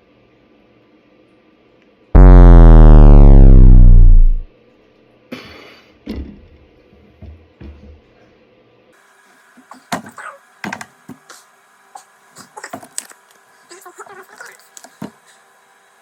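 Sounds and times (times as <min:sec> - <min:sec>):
deep synthesizer hit: 0:02.2 - 0:04.5.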